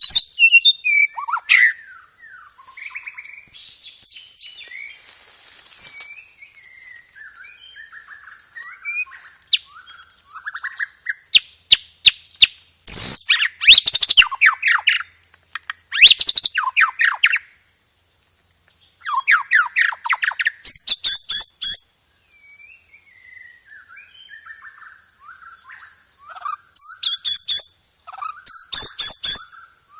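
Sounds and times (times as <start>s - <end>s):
songbird twittering and trilling: 0.0s - 17.7s, 18.4s - 29.9s.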